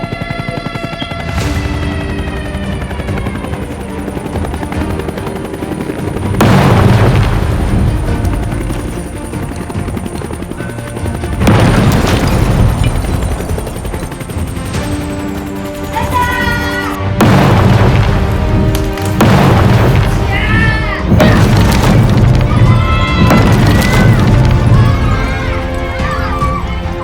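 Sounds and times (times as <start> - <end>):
background music: 0.0 - 27.0
loud booms: 6.4 - 8.7, 11.4 - 13.5, 17.2 - 26.0.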